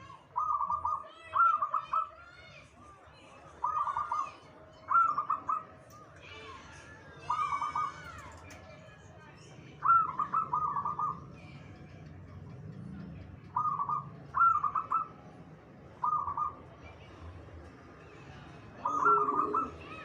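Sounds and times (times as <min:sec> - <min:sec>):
dove cooing: 0:09.8 - 0:11.2, 0:13.6 - 0:15.2, 0:16.0 - 0:16.6, 0:18.8 - 0:20.0.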